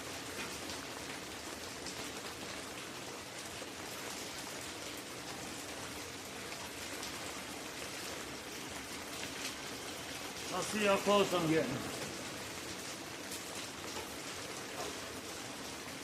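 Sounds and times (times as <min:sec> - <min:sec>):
crackling hiss: 0:09.3 - 0:15.8.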